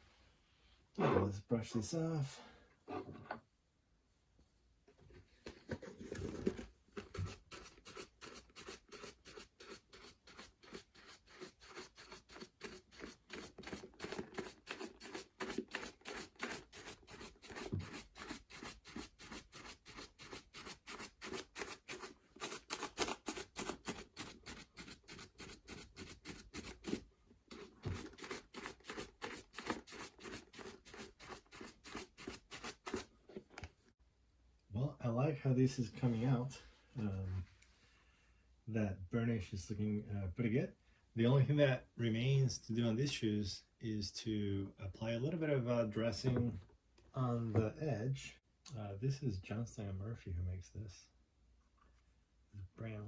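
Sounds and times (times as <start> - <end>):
shoe brush brushing leather boot: 7.0 - 33.1.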